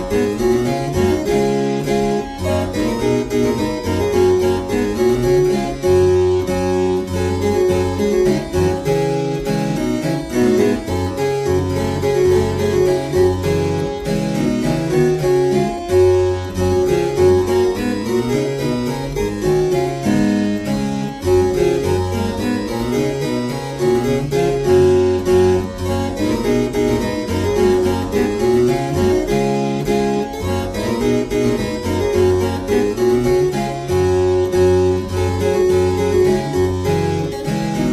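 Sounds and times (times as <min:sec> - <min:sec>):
harpsichord music: 0:00.0 - 0:37.9.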